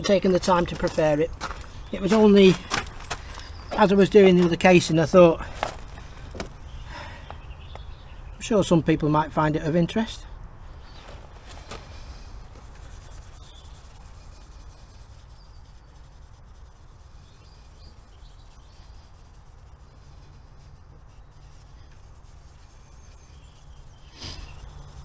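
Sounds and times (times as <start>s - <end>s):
faint bird chirps: 12.8s - 25.0s.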